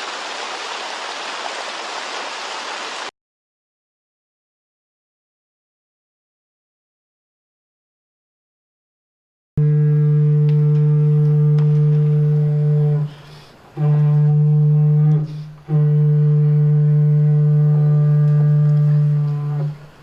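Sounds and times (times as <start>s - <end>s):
low wind instrument drone: 9.6s - 20.0s.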